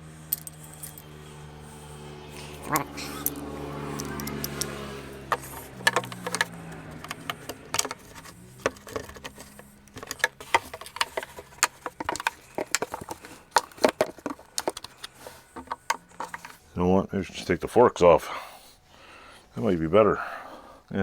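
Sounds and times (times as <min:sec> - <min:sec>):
socket ratchet clicking: 0:02.4 - 0:16.6.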